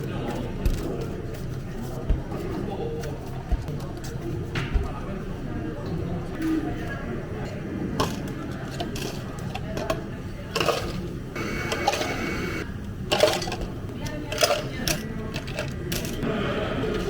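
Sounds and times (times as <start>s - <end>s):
murmur of voices: 0.0s - 17.0s
steady low hum: 11.4s - 12.6s.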